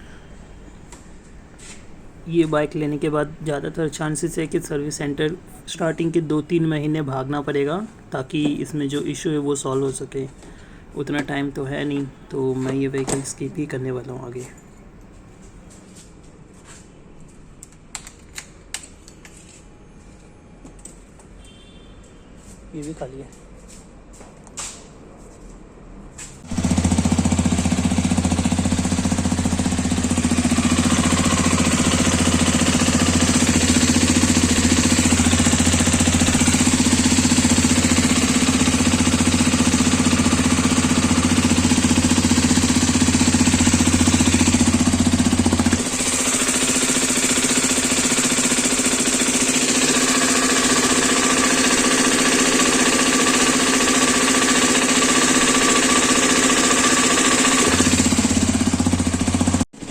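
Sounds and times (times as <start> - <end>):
motorcycle engine idling with rattling: 26.4 - 59.9.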